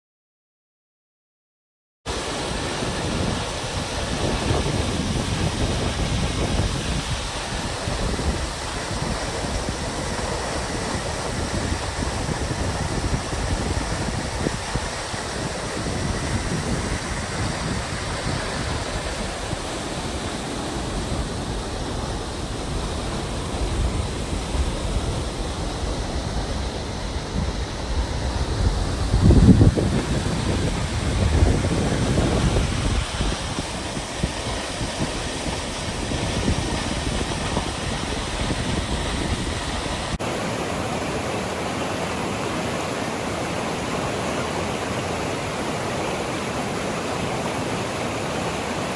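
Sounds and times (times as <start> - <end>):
waterfall rushing: 2.1 - 48.9
wind buffeting the microphone: 2.1 - 48.9.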